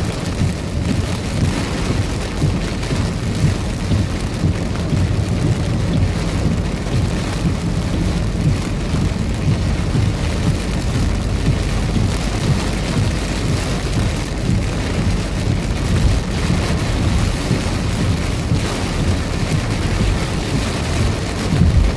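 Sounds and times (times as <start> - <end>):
deep thunder rumble: 0.0 - 21.9
heavy rain downpour: 0.0 - 21.9.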